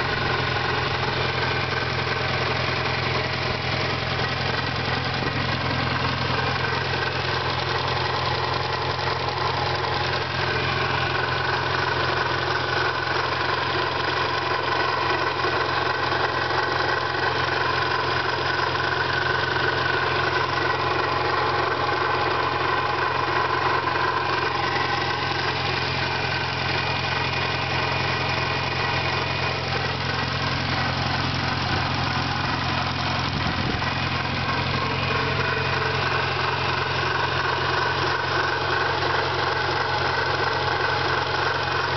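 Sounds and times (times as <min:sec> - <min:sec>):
car engine idling: 0:00.0 - 0:41.9
weird engine noise: 0:00.0 - 0:41.9.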